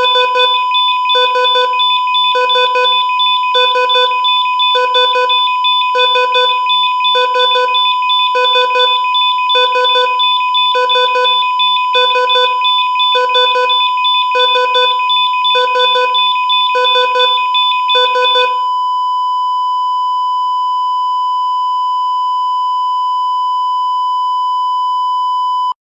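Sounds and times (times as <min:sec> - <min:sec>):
flatline tone: 0:00.0 - 0:18.6
heart monitor beeps: 0:00.0 - 0:25.7.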